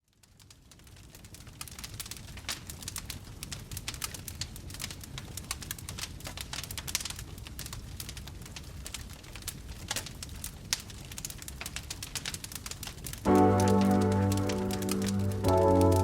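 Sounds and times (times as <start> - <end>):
campfire crackling: 8.8 - 16.0.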